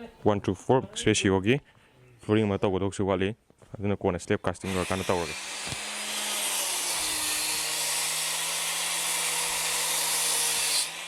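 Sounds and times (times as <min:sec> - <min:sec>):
electric motor running: 0:04.7 - 0:11.0.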